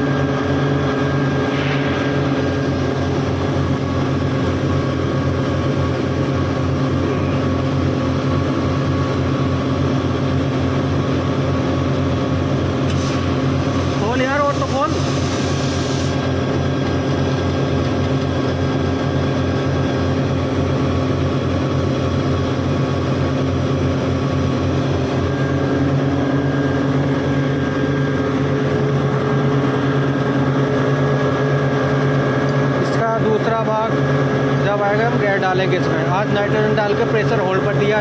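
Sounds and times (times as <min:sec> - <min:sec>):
machinery droning with fast pulse: 0:00.0 - 0:38.0
gas hissing from valve: 0:12.8 - 0:16.3.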